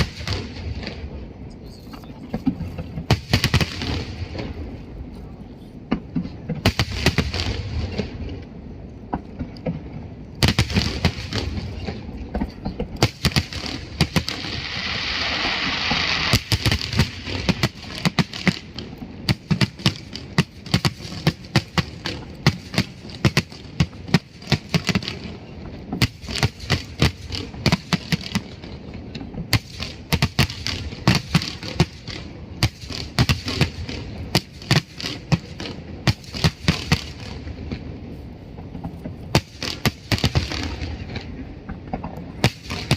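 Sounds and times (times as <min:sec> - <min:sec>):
hissing crackle of fireworks: 0:00.0 - 0:08.4, 0:09.3 - 0:42.9
fireworks shells bursting: 0:13.0 - 0:25.4.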